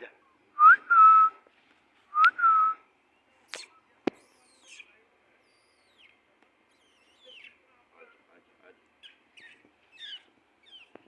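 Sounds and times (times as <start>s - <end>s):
man whistling: 0.6s - 1.4s, 2.2s - 2.8s.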